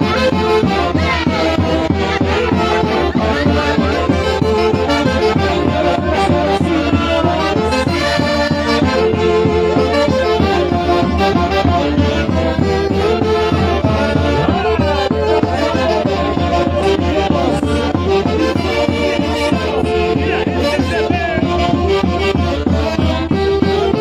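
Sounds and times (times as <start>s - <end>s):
festival music from an orchestra: 0.0s - 24.0s.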